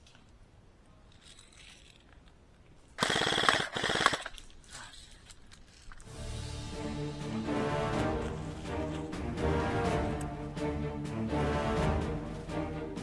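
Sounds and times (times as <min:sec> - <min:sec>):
airsoft rifle full-auto bursts: 0:03.0 - 0:04.7
music: 0:06.1 - 0:13.0.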